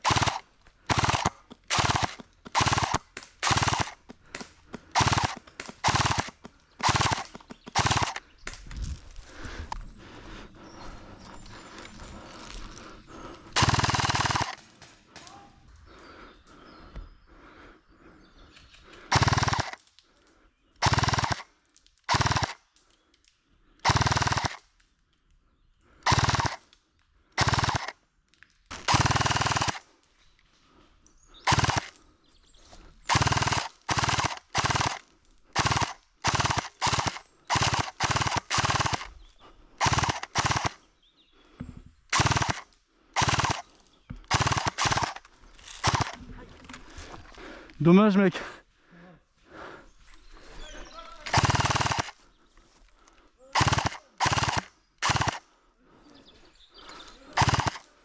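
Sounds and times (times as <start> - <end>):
airsoft gun full-auto bursts: 0.0 - 8.3, 13.2 - 14.8, 19.0 - 19.8, 20.8 - 21.5, 22.1 - 22.6, 23.8 - 24.7, 26.0 - 26.6, 27.4 - 28.0, 28.7 - 29.9, 31.4 - 32.0, 33.1 - 40.9, 42.1 - 46.2, 51.1 - 52.3, 53.5 - 55.5, 57.2 - 58.0.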